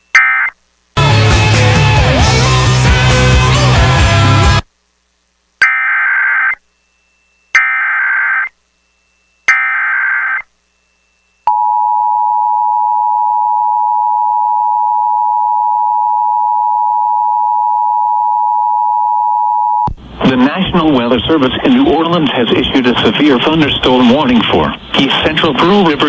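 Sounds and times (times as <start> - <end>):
digital data screech bursts: 0.1 - 0.6, 5.6 - 6.6, 7.6 - 8.5, 9.5 - 10.5
two-tone attention signal: 0.2 - 0.5, 7.6 - 8.5.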